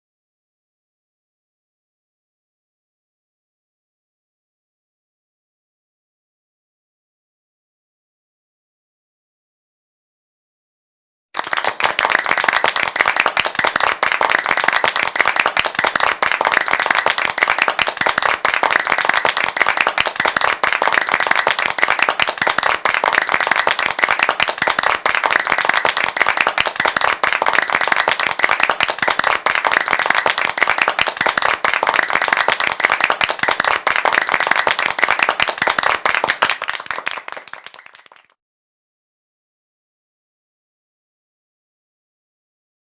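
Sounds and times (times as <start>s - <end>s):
crowd applauding: 11.4s - 38.4s.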